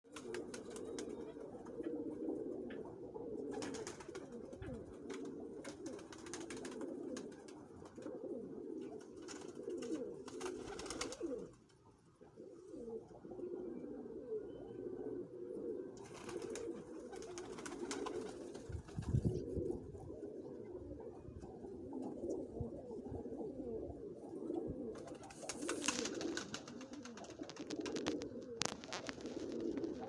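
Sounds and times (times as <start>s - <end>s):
doves cooing: 0.1s - 30.0s.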